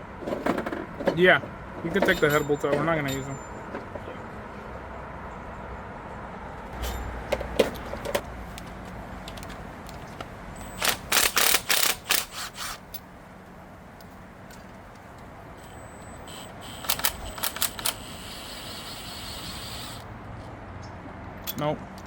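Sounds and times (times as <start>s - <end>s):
steel bolts clinking and rattling: 1.8s - 4.1s, 9.2s - 13.1s, 16.8s - 20.0s.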